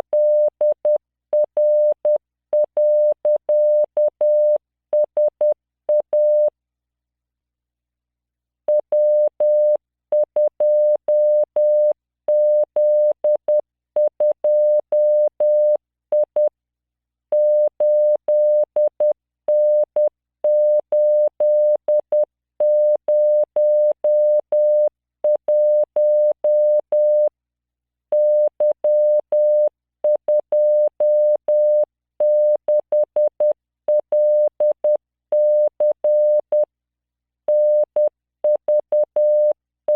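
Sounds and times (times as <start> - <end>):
morse code practice tone: 8.9 - 16.5, 17.4 - 27.3, 28.1 - 36.7, 37.5 - 39.9.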